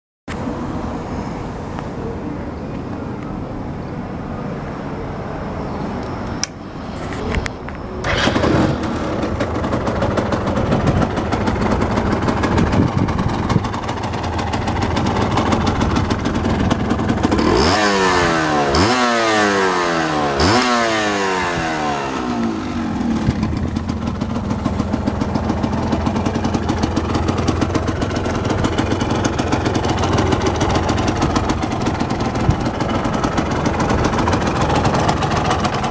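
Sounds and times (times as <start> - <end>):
two-stroke engine idling and revving: 8.0 - 35.9.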